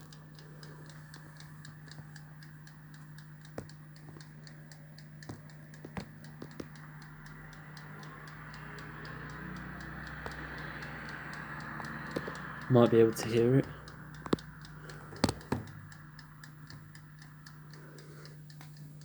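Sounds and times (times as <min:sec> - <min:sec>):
clockwork timer ticking: 0:00.0 - 0:19.0
steady low hum: 0:00.0 - 0:19.0.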